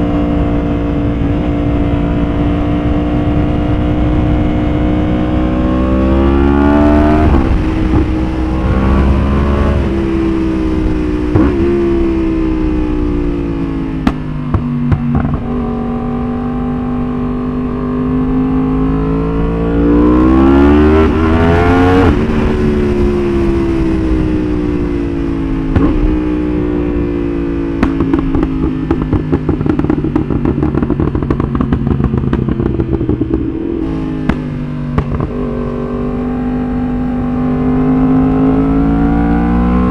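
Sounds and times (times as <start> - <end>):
exhaust crackles and pops: 0.0 - 39.9
motorcycle engine accelerating: 0.0 - 39.9.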